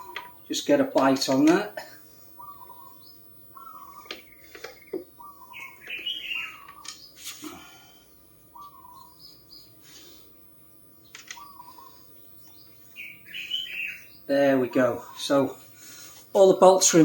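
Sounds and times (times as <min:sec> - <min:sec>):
bird chirping: 0:00.0 - 0:17.0
sharp clicks: 0:11.0 - 0:11.5.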